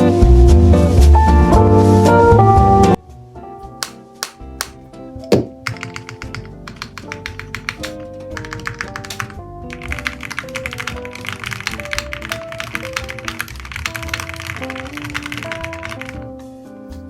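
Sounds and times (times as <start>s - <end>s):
background piano music: 0.0s - 17.0s
mechanical keyboard typing: 3.8s - 16.3s.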